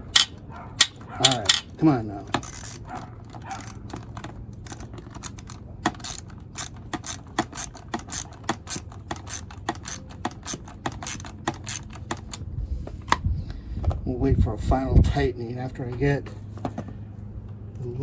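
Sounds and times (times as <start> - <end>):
ratchet wrench clicking: 0.0 - 1.7, 2.3 - 12.4.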